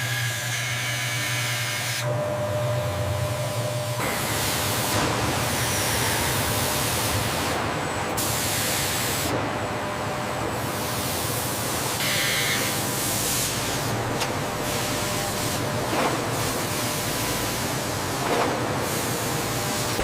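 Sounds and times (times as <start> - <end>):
loud hiss of milling machine: 10.9 - 18.2
low machine hum: 13.8 - 16.0.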